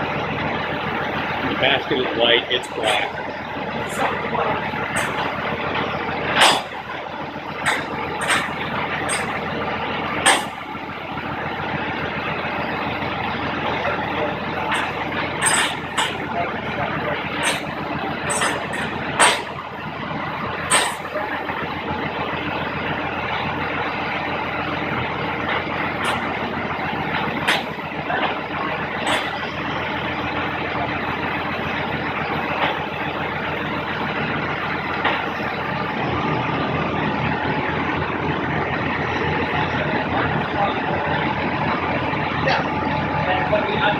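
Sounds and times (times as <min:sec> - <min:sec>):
vehicle running: 0:00.0 - 0:43.9
sharp clicks and knocks: 0:02.6 - 0:09.5, 0:10.2 - 0:10.7, 0:14.7 - 0:16.3, 0:17.2 - 0:19.7, 0:20.6 - 0:21.2, 0:25.5 - 0:26.4, 0:27.1 - 0:28.4, 0:29.0 - 0:29.5.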